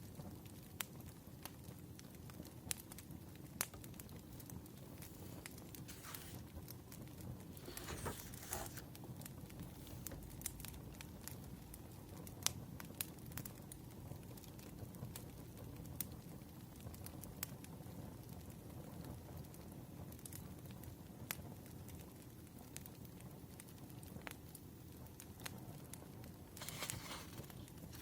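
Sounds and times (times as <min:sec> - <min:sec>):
firewood crackling: 0:02.0 - 0:11.6, 0:26.5 - 0:28.0
soft rustle: 0:03.7 - 0:06.5, 0:07.6 - 0:10.5, 0:26.6 - 0:28.0.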